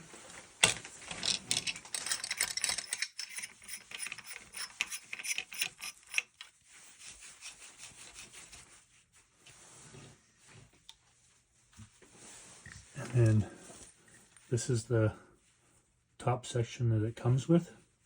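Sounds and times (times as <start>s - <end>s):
metal threads clicking and rubbing: 1.1s - 6.6s.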